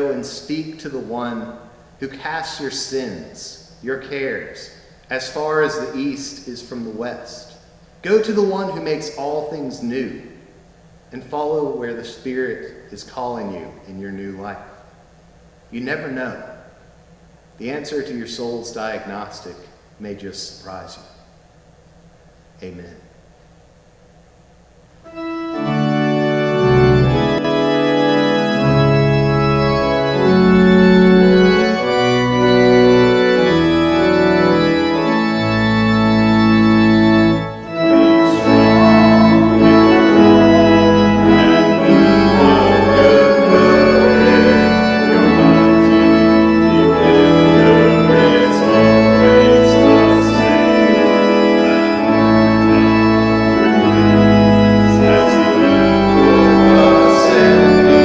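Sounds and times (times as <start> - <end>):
church organ playing chords: 0.0 - 3.5, 25.0 - 58.0.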